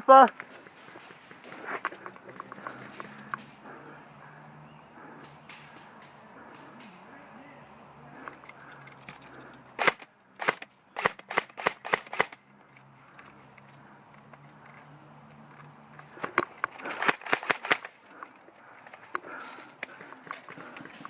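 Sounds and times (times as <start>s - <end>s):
airsoft guns firing: 9.8s - 12.4s, 16.9s - 18.0s.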